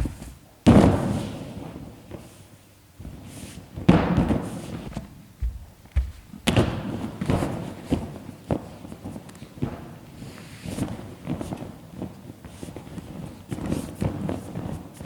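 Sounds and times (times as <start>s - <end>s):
heavy thumps on a balloon: 0.0s - 2.2s, 3.8s - 8.8s.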